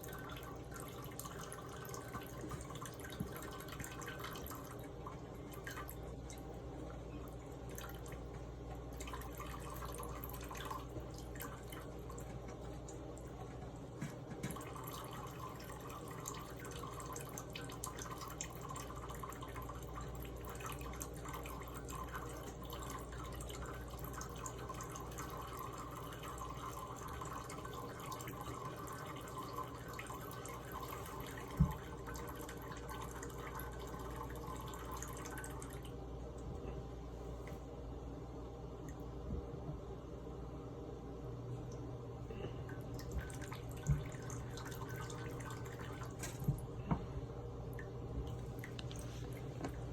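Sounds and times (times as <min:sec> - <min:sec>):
faucet running into sink: 0:00.0 - 0:35.9, 0:43.0 - 0:47.0.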